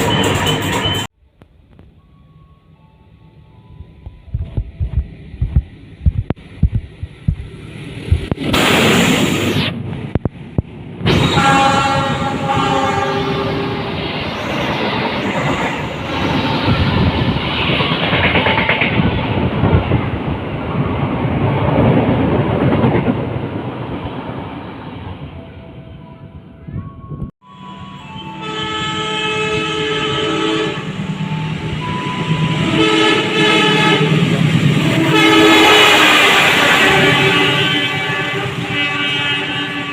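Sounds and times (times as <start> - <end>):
train carriages rushing by: 3.7 - 25.4
train horn blast: 11.1 - 14.0, 27.4 - 39.9.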